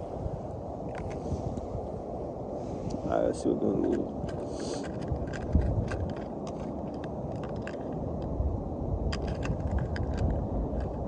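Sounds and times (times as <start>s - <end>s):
wind rumbling on microphone: 0.0s - 11.0s
fishing tackle clicks and rattles: 3.7s - 8.3s, 9.1s - 11.0s.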